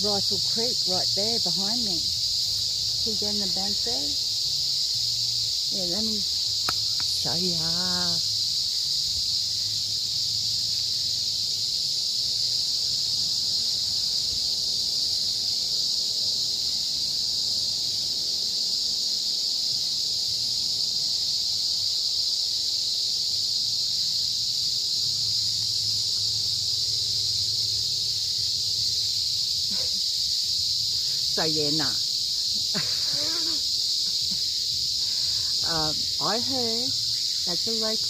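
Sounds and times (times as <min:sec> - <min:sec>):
insects droning: 0:00.0 - 0:38.0.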